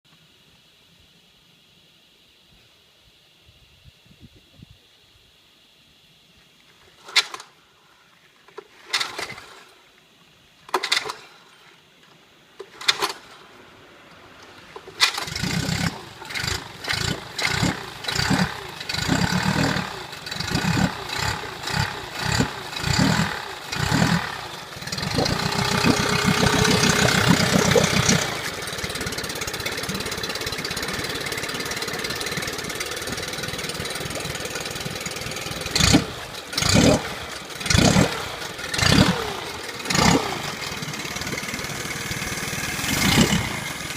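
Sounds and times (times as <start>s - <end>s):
starter rope pulls: 8.5s - 9.7s, 10.7s - 11.5s, 12.6s - 13.5s, 14.5s - 43.9s
outboard motor revving and idling: 8.8s - 9.8s, 14.6s - 43.9s.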